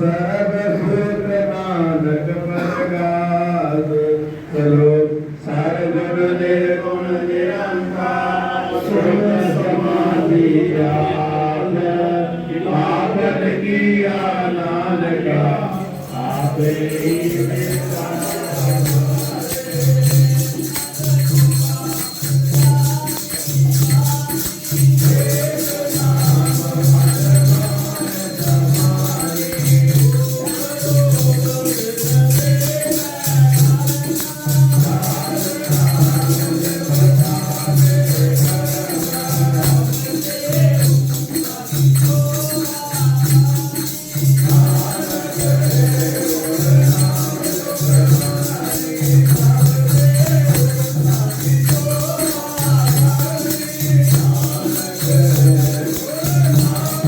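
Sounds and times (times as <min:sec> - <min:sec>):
jingling percussion: 0:15.2 - 0:57.0.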